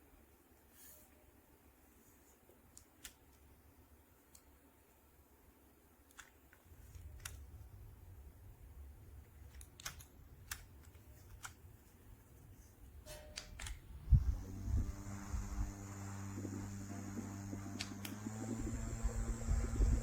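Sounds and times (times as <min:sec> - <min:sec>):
mini fan whirring: 0:06.1 - 0:20.0.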